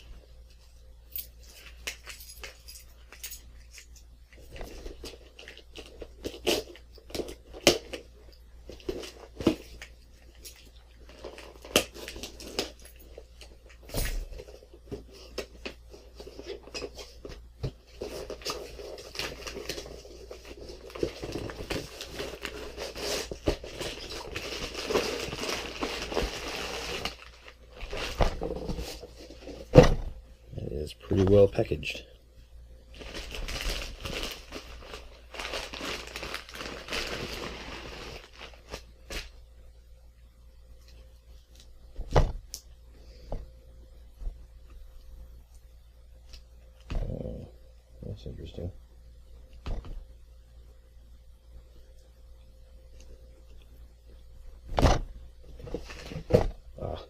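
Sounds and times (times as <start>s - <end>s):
packing material rustling: 1.4s - 30.0s, 32.9s - 39.4s
packing material tearing: 3.7s - 14.6s, 17.9s - 29.6s, 32.9s - 39.3s.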